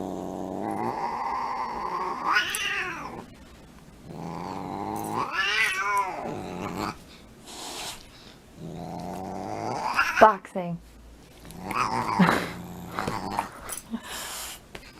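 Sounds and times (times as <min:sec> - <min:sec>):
cat growling and yowling: 0:00.0 - 0:03.3, 0:04.1 - 0:07.0, 0:08.6 - 0:10.2, 0:11.5 - 0:13.5
cat hissing: 0:00.0 - 0:03.3, 0:04.1 - 0:10.3.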